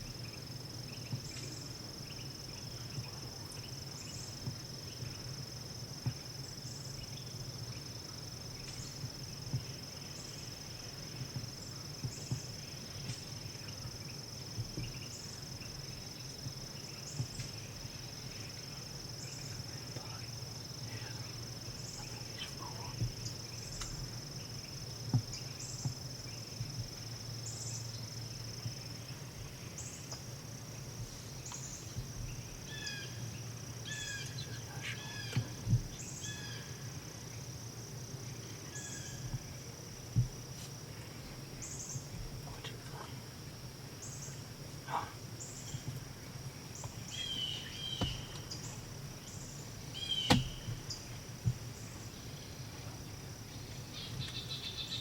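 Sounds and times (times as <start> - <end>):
insects droning: 0.0 - 55.0
bird calling: 31.1 - 36.8, 46.7 - 52.9.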